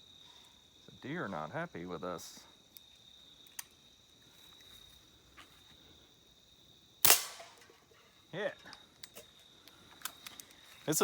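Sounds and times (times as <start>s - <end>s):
air pistol shot: 7.0s - 7.6s.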